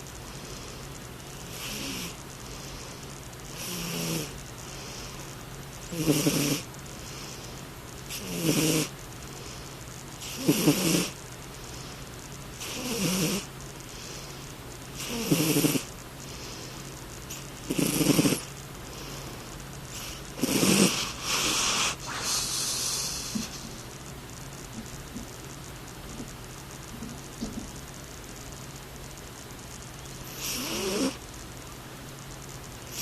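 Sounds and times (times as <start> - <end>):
cat snoring: 1.4 - 5.2, 5.9 - 7.4, 8.1 - 9.0, 10.2 - 11.2, 12.6 - 14.3, 15.0 - 15.9, 17.3 - 19.2, 19.9 - 23.6, 30.2 - 31.2.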